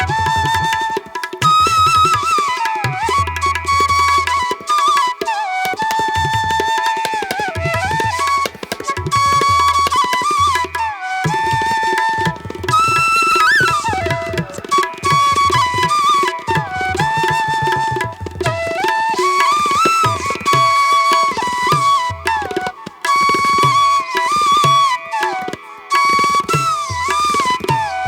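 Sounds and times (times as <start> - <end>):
bamboo flute melody: 0.0 - 28.0.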